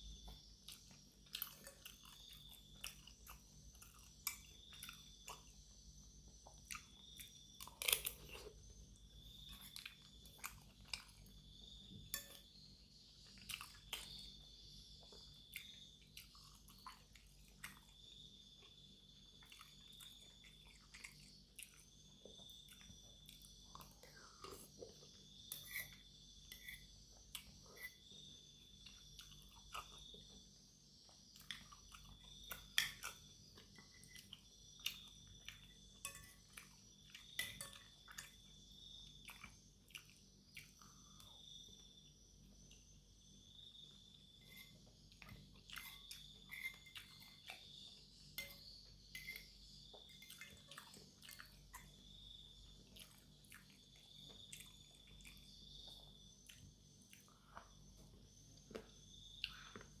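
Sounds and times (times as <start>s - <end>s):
faint insect trill: 0.0s - 60.0s
wet chewing mouth sounds: 15.0s - 18.7s, 38.0s - 41.6s, 49.9s - 57.8s.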